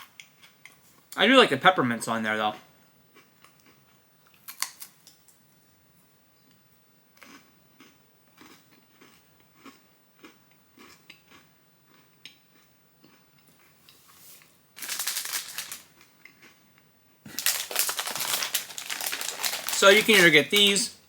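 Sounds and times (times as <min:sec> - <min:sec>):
cookie crunching chews: 0:03.1 - 0:05.2, 0:07.2 - 0:13.8, 0:14.8 - 0:20.8
plastic snack package crinkling: 0:14.8 - 0:16.1, 0:17.3 - 0:21.0.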